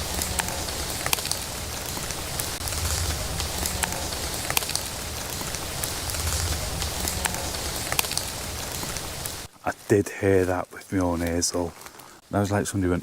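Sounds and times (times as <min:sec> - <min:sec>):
low rumble: 0:00.0 - 0:09.5
raindrops tapping close by: 0:00.0 - 0:09.5
steady rain falling: 0:00.0 - 0:13.0.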